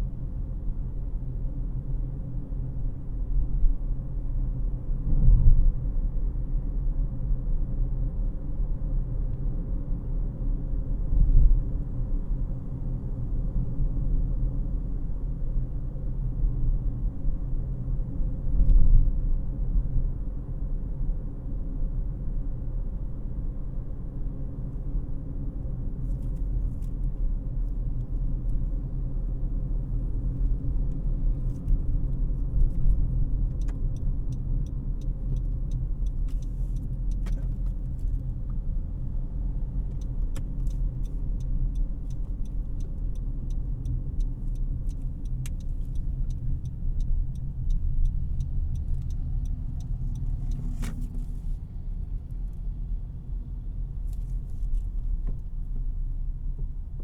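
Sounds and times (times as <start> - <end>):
car tyre and engine rumble: 0.0 - 57.0
quick light ticks: 39.9 - 51.4.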